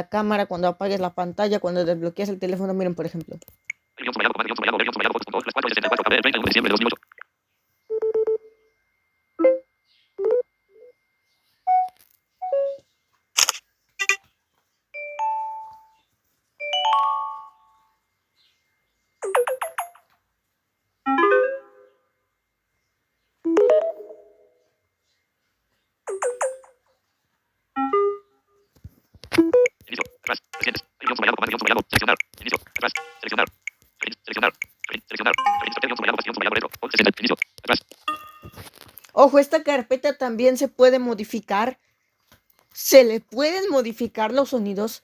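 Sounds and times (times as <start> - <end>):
phone beeps: 4.0 - 7.2, 7.9 - 8.6, 10.2 - 10.9, 29.3 - 38.7
phone clicks: 29.2 - 39.0
phone chimes: 35.1 - 36.6, 38.1 - 38.6.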